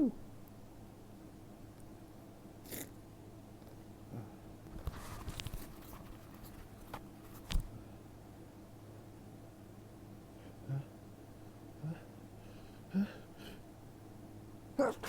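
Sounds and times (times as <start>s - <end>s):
soft clicks and rustling: 4.7s - 7.7s.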